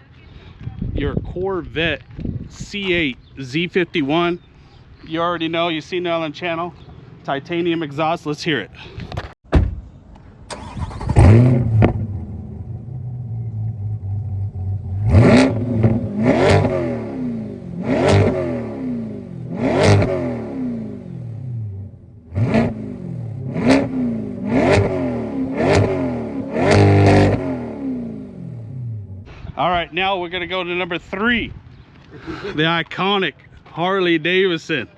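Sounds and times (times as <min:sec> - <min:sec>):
sports car engine revving: 0:10.5 - 0:29.3.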